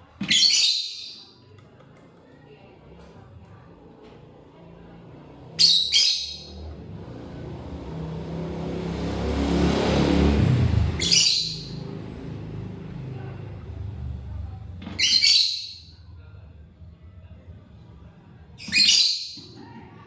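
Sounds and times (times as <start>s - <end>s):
vehicle passing: 3.2s - 18.8s.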